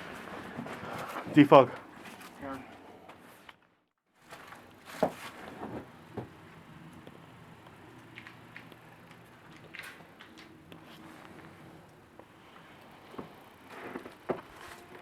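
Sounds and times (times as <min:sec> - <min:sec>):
faint steady hum: 0:04.3 - 0:15.0.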